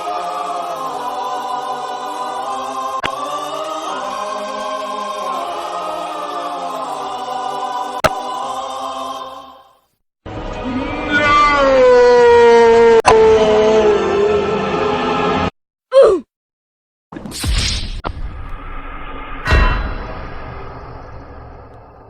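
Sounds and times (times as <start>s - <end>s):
choir singing held chords: 0.0s - 10.6s, 14.0s - 15.5s.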